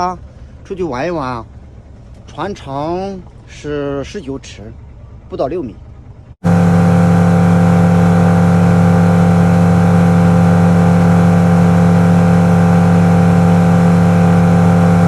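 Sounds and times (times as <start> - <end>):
engine running steady hum: 0.0 - 15.0.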